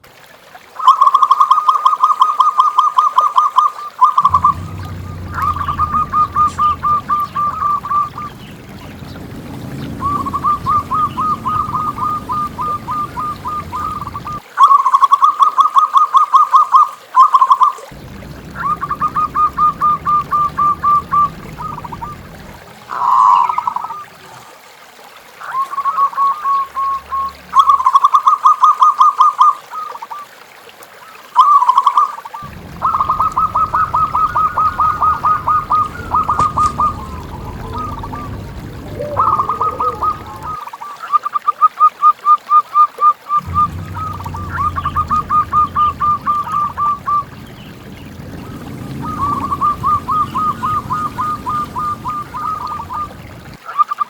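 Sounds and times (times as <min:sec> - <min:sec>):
doves cooing: 0:04.2 - 0:14.4, 0:17.9 - 0:24.1, 0:32.4 - 0:40.6, 0:43.4 - 0:53.6.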